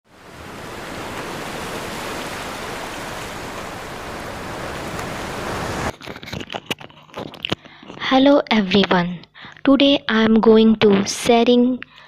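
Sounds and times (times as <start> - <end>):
steady rushing noise: 0.1 - 6.0.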